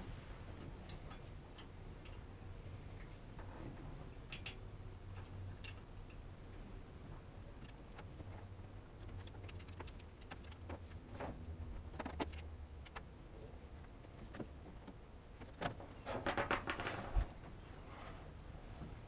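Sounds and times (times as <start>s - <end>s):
light metallic clicks and clinks: 4.2s - 6.2s.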